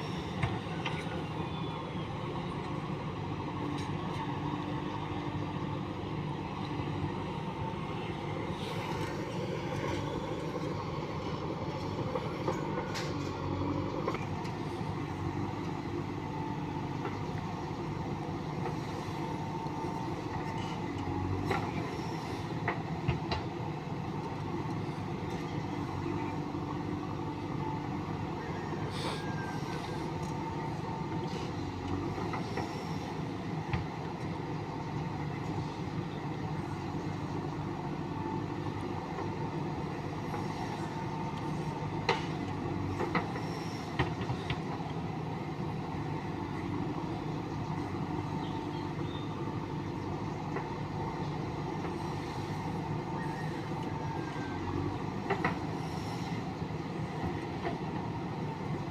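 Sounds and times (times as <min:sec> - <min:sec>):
diesel engine running: 0:00.0 - 0:58.9.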